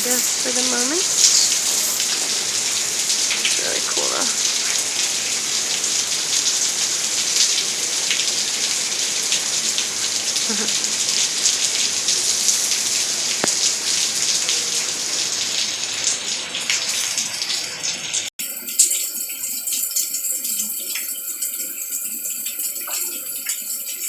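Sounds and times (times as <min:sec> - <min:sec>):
heavy rain falling: 0:00.0 - 0:16.9.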